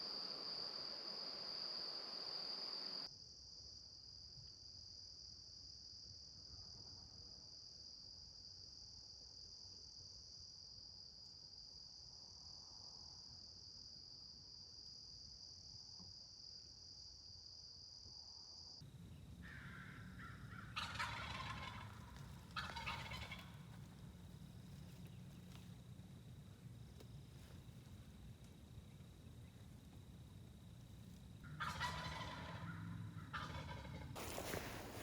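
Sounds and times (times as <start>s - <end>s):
insects buzzing: 0.0s - 3.1s, 18.8s - 35.0s
turkey gobbling: 18.8s - 35.0s.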